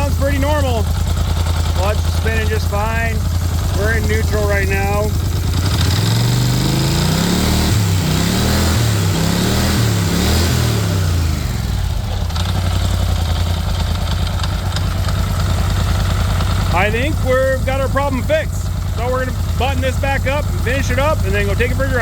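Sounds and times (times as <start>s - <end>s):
engine revving and idling: 0.0s - 22.0s.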